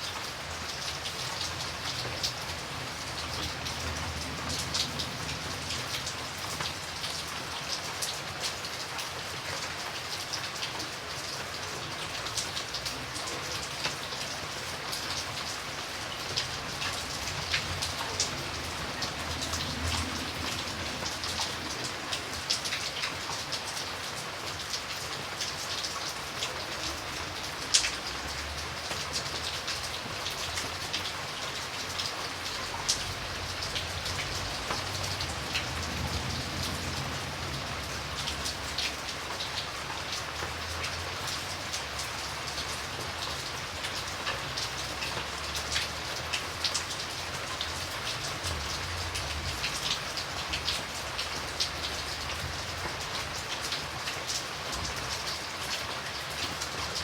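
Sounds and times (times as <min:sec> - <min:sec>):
raindrops ticking on surfaces: 0:00.0 - 0:57.0
steady rain hiss: 0:00.0 - 0:57.0.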